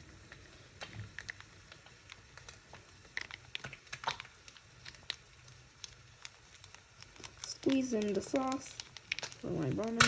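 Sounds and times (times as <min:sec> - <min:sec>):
low steady hum: 0:00.0 - 0:10.0
packaging being handled: 0:05.8 - 0:10.0.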